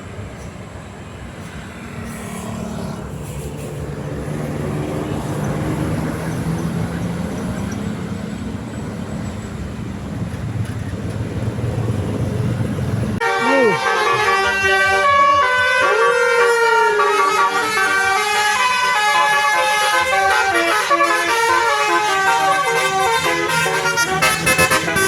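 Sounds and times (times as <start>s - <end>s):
heavy bus engine: 0.0s - 25.0s
road noise: 0.0s - 25.0s.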